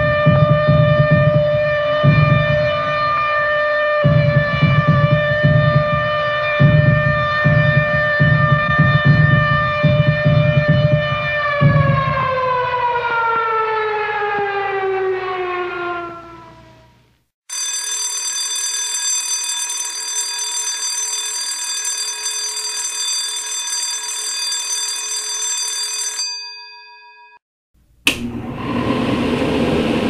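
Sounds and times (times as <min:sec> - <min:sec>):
air-raid siren winding down: 0:00.0 - 0:17.1, 0:28.2 - 0:30.0
alarm bell ringing: 0:17.5 - 0:27.4.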